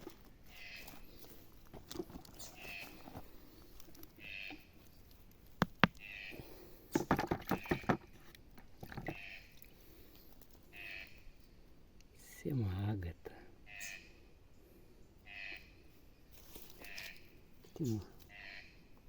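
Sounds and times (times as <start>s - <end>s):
stones knocking together: 1.6s - 3.3s, 5.5s - 6.1s, 6.9s - 8.2s, 8.8s - 9.2s.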